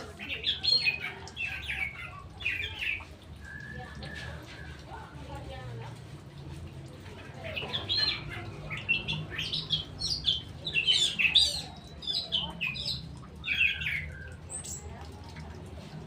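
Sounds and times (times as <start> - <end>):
bird singing whistled phrases: 3.4 - 4.8.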